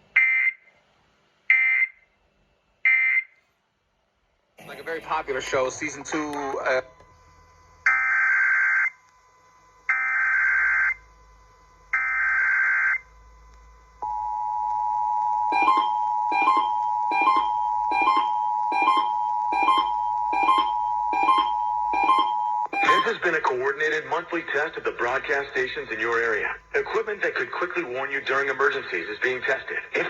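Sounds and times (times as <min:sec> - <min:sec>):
two-tone attention signal: 0:14.0 - 0:23.4
regular pulsing beat: 0:15.3 - 0:23.7.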